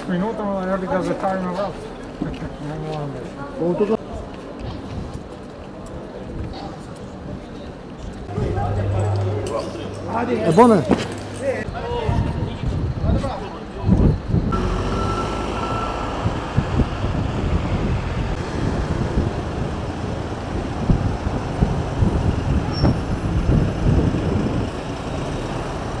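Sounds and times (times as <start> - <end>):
vehicle engines rumbling: 8.1 - 11.7, 14.1 - 26.0.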